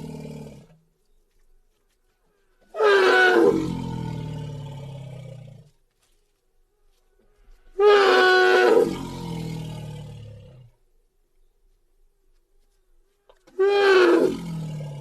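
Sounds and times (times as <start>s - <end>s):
recorded roar: 0.0s - 0.8s, 2.8s - 5.7s, 7.8s - 10.8s, 13.5s - 15.0s.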